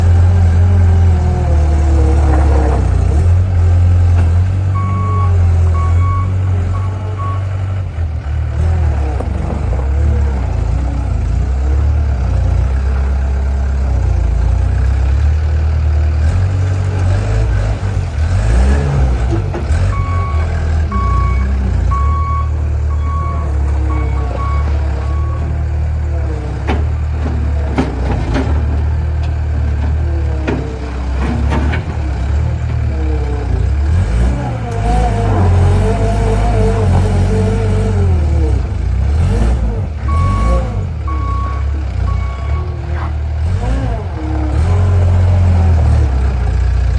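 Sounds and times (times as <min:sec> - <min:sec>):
loader engine running: 0:00.0 - 0:46.9
reversing alarm beeping: 0:04.8 - 0:07.5, 0:19.9 - 0:25.6, 0:40.1 - 0:42.8.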